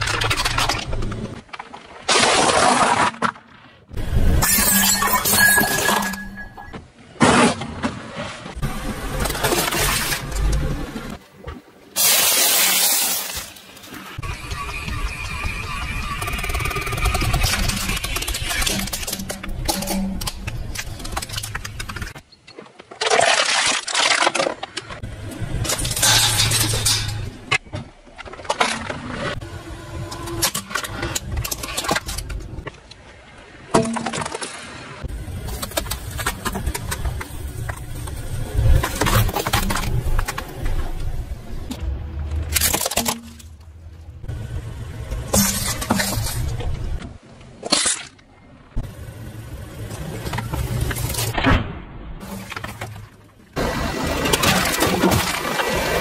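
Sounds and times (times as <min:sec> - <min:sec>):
tyres crushing objects: 0:00.0 - 0:03.7, 0:16.4 - 0:29.1
objects crunching under tyre: 0:16.1 - 0:29.4, 0:33.7 - 0:43.8.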